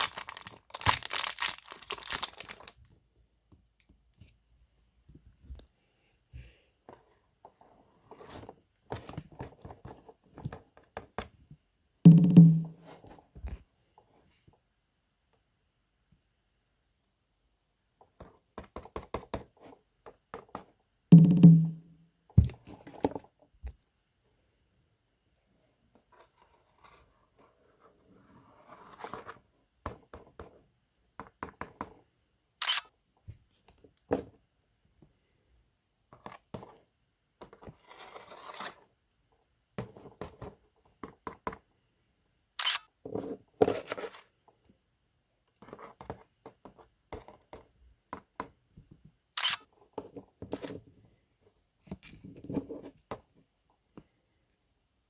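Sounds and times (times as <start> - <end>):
toy packaging rustling: 0.0 - 3.0.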